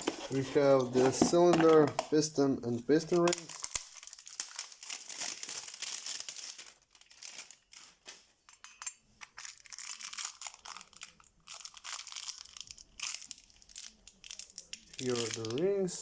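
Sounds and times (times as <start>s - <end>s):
packaging crinkling and rustling: 3.1s - 8.4s, 9.3s - 16.0s.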